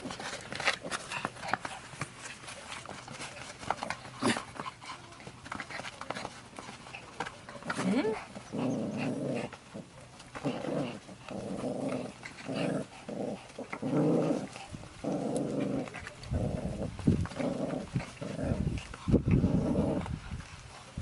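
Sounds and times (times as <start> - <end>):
dog growling: 6.9 - 20.3.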